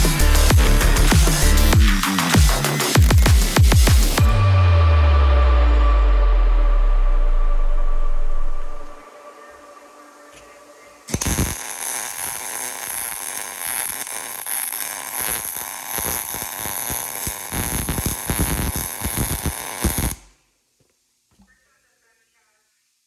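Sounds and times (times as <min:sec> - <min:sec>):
welding arc crackling: 0:00.0 - 0:04.4, 0:10.4 - 0:20.4.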